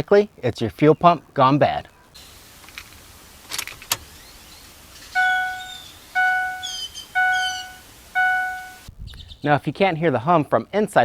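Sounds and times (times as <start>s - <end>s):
vehicle warning chime: 5.1s - 8.9s.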